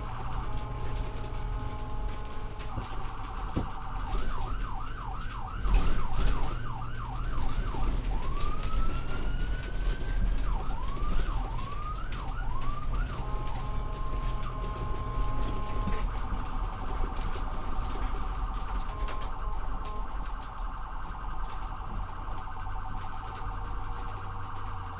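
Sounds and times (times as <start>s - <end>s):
ambulance siren: 0.0s - 24.9s.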